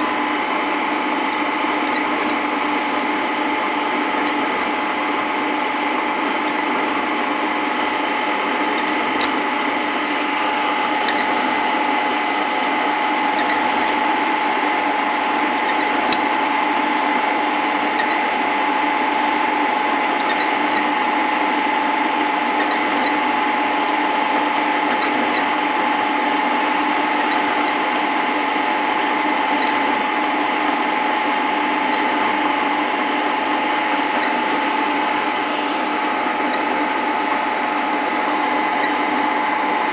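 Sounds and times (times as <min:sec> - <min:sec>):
metal lathe humming and whining: 0:00.0 - 0:39.9.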